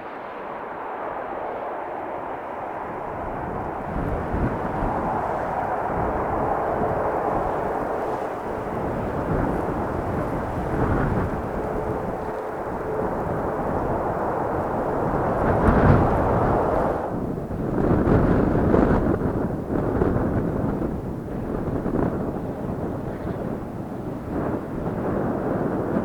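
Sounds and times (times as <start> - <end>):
low uneven rumble: 0.0 - 18.2
aircraft engine noise: 0.0 - 26.0
wind buffeting microphone: 0.0 - 26.0.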